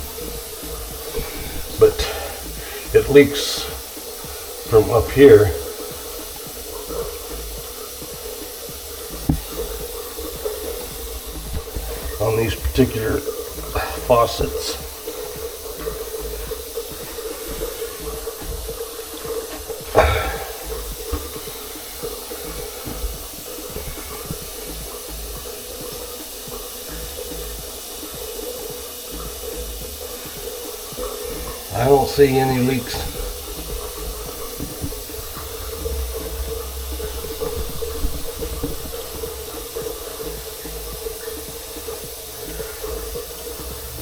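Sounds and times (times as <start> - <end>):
constant hum: 0.0 - 44.0
faucet water running into sink: 0.0 - 44.0.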